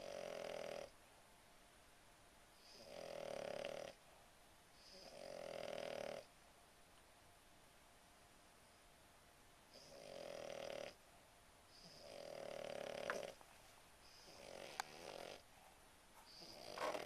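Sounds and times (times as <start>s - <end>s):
dog snoring: 0.0s - 1.0s, 2.6s - 4.0s, 4.8s - 6.3s, 9.7s - 11.0s, 11.7s - 13.4s, 14.0s - 15.5s, 16.3s - 17.0s.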